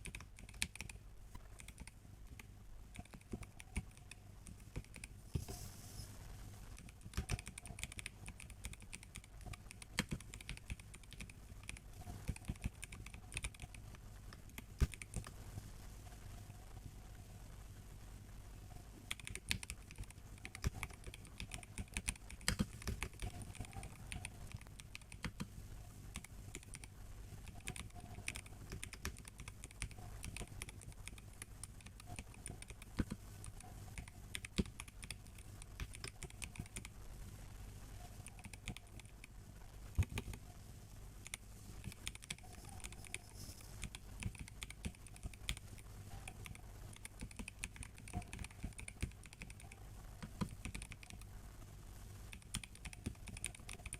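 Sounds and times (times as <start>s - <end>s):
mechanical keyboard typing: 0.0s - 1.0s, 1.6s - 5.1s, 6.8s - 15.3s, 19.1s - 25.5s, 26.1s - 36.9s, 38.2s - 39.3s, 41.2s - 51.3s, 52.3s - 53.9s.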